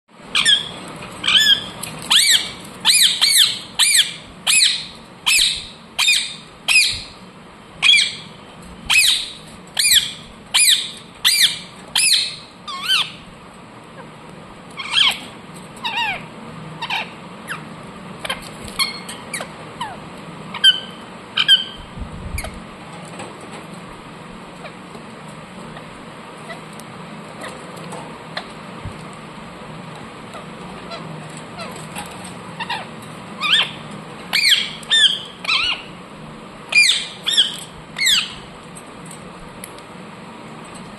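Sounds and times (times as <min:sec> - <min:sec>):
parrot squawking: 0:00.3 - 0:07.2, 0:07.8 - 0:08.3, 0:08.9 - 0:13.3, 0:14.7 - 0:22.6, 0:25.7 - 0:26.8, 0:30.3 - 0:36.0, 0:36.7 - 0:38.5.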